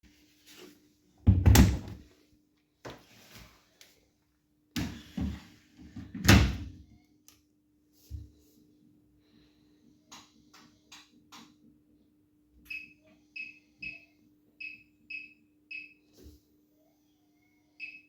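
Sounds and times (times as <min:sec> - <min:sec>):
washing machine door thumps and bangs: 0:01.2 - 0:02.0, 0:06.0 - 0:06.8.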